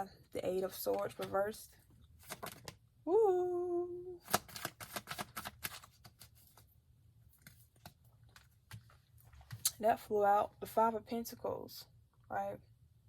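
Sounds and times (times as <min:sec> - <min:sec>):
cards being shuffled: 0:00.8 - 0:01.6, 0:02.2 - 0:02.8, 0:04.2 - 0:06.7.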